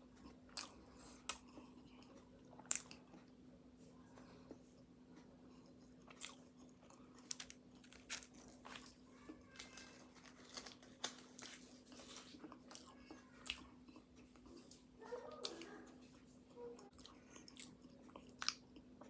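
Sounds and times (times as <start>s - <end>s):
crunchy pastry bites: 6.0s - 13.7s.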